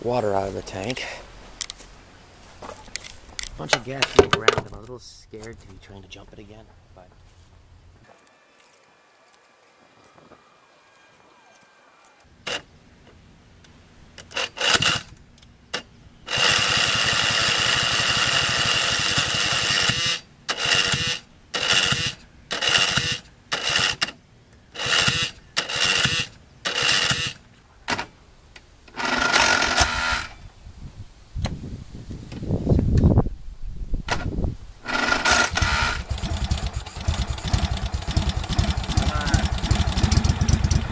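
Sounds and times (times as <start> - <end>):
starter motor cranking engine: 16.3 - 24.0, 34.9 - 40.9
low engine rumble: 35.6 - 40.9.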